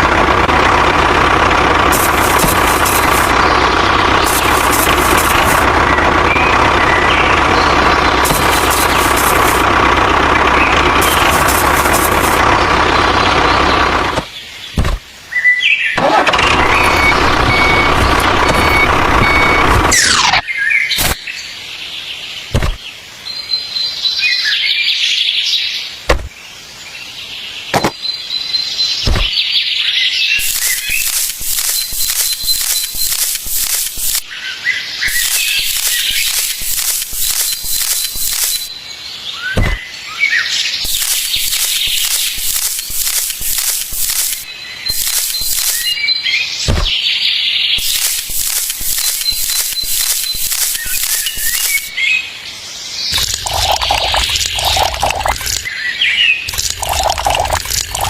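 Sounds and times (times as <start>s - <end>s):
motor running loudly: 0.0s - 15.0s, 16.0s - 20.4s, 30.4s - 34.3s, 35.1s - 38.7s, 40.8s - 45.9s, 47.8s - 51.9s, 53.2s - 55.7s, 56.5s - 58.0s
birds chirping: 0.8s - 58.0s
sharp clicks: 1.8s - 5.7s, 8.2s - 9.7s, 10.8s - 12.6s, 21.0s - 21.2s, 30.4s - 34.3s, 35.1s - 38.7s, 40.9s - 45.9s, 47.8s - 51.9s, 53.2s - 55.7s, 56.5s - 58.0s.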